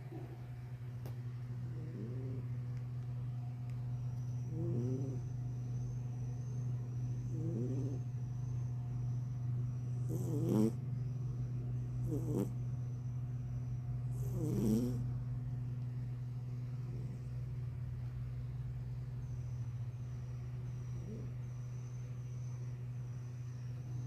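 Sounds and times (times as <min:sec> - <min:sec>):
cat snoring: 0:00.0 - 0:00.6, 0:01.6 - 0:02.6, 0:04.4 - 0:05.4, 0:07.2 - 0:08.2, 0:09.9 - 0:10.9, 0:12.0 - 0:12.7, 0:14.1 - 0:15.1, 0:16.8 - 0:17.5, 0:20.7 - 0:21.4
steady low hum: 0:00.0 - 0:24.0.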